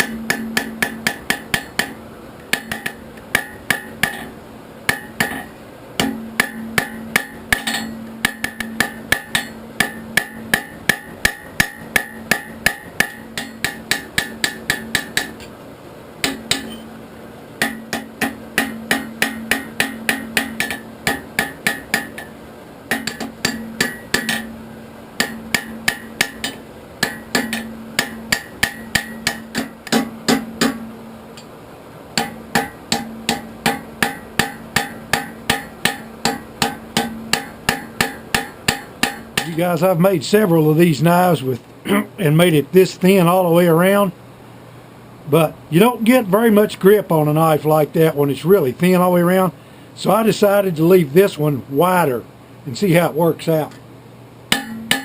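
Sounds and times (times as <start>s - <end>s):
hammer striking steel on anvil: 0.0s - 15.5s, 16.2s - 16.9s, 17.6s - 24.6s, 25.2s - 31.5s, 32.2s - 39.6s, 54.5s - 55.0s
steady low hum: 0.0s - 55.0s.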